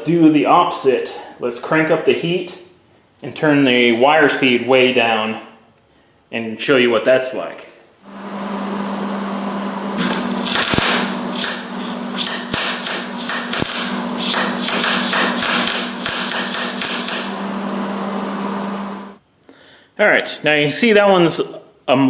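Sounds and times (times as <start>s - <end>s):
steady hum: 7.9s - 20.3s
hissing welding arc: 10.0s - 17.4s.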